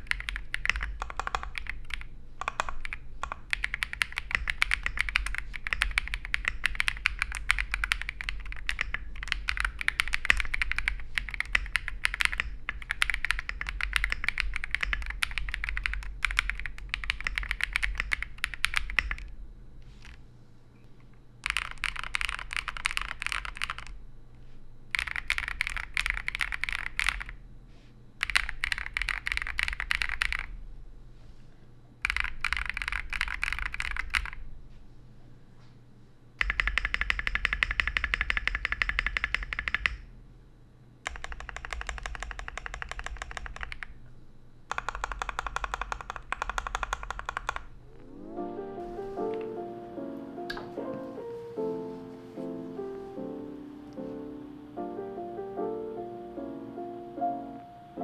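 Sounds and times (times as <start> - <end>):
mechanical keyboard typing: 0.0 - 19.3, 21.4 - 24.0, 24.9 - 27.4, 28.2 - 30.5, 32.0 - 34.4, 36.4 - 40.0, 41.0 - 44.0, 44.7 - 47.7.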